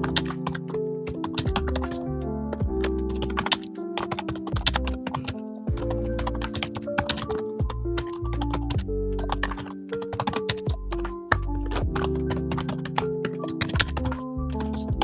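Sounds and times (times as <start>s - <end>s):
mechanical keyboard typing: 0.0s - 15.0s
background music with bass line: 1.4s - 3.3s, 5.7s - 6.5s, 7.5s - 9.6s, 10.6s - 12.4s, 13.8s - 15.0s.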